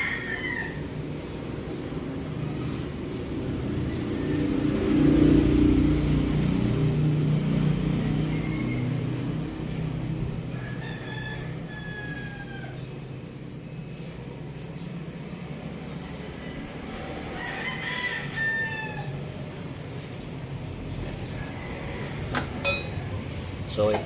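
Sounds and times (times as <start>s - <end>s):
rooster crowing: 0.0s - 1.2s, 8.0s - 9.3s, 10.4s - 13.6s, 16.2s - 19.6s, 21.0s - 23.3s.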